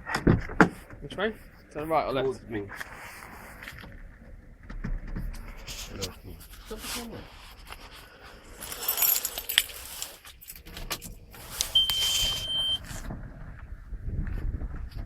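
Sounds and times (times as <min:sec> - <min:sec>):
keys jangling: 0:08.6 - 0:12.3
electronic beep: 0:11.8 - 0:12.8.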